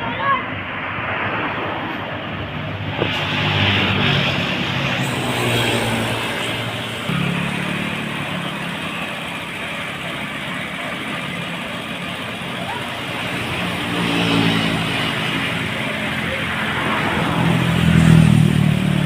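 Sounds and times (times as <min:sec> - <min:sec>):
heavy vehicle engine drone: 0:00.0 - 0:19.0
road traffic noise: 0:00.0 - 0:19.0.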